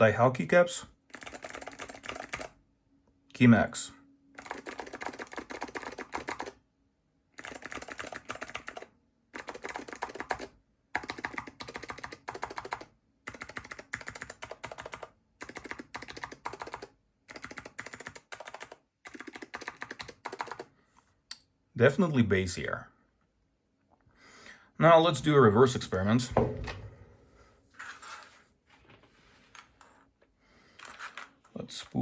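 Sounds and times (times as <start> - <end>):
keyboard typing: 1.1 - 2.6, 4.4 - 6.6, 7.4 - 20.7.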